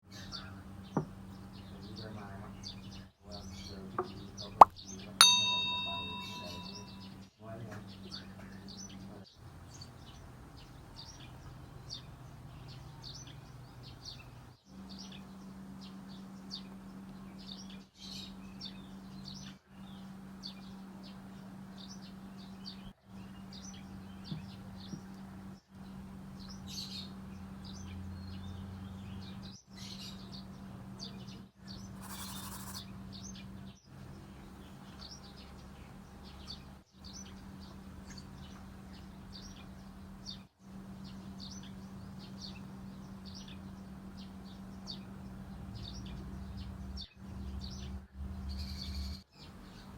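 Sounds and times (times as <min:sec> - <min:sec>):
small birds chirping: 0:00.0 - 0:49.9
steady low hum: 0:37.1 - 0:49.9.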